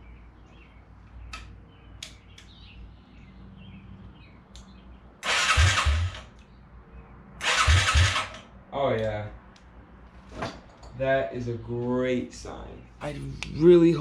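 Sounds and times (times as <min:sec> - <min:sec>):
electric starter cranking engine: 0:05.2 - 0:06.3, 0:07.4 - 0:08.4.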